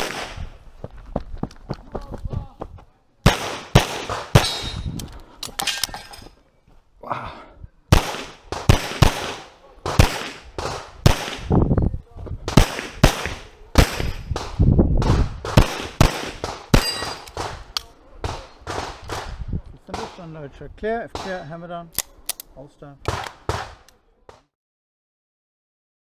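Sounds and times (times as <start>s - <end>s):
handgun shots: 0.0s - 0.6s, 3.3s - 6.0s, 7.9s - 11.6s, 12.5s - 20.3s, 21.1s - 24.0s.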